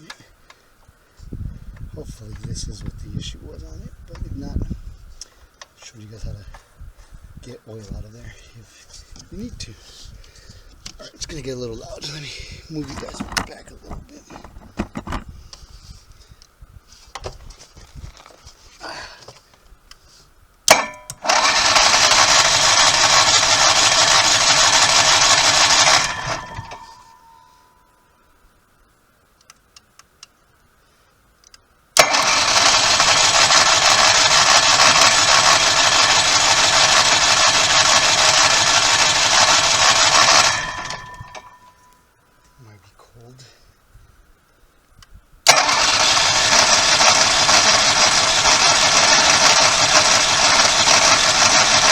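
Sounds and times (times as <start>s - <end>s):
generator engine running: 12.7s - 15.3s, 20.7s - 27.4s, 32.0s - 41.8s, 45.5s - 51.9s
generator starter click: 20.7s - 21.7s, 25.3s - 27.4s, 32.0s - 35.8s, 37.9s - 42.0s, 45.5s - 51.2s.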